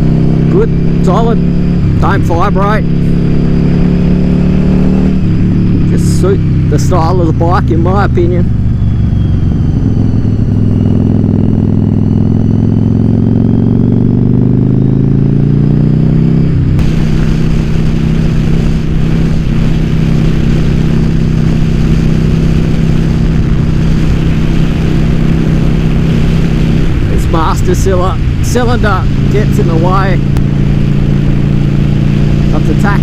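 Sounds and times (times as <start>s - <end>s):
motorcycle engine accelerating: 0.0s - 33.0s
wind rush on microphone: 8.0s - 12.6s, 16.4s - 33.0s.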